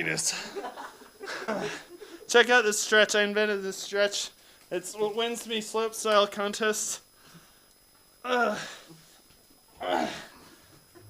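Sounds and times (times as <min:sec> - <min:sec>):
man grunting: 0:08.3 - 0:08.9, 0:09.8 - 0:10.3.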